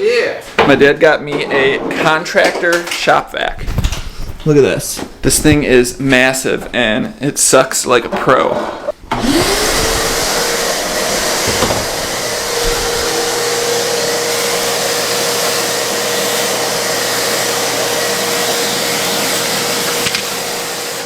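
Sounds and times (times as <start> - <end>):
shop vac motor whine: 9.0 - 21.0.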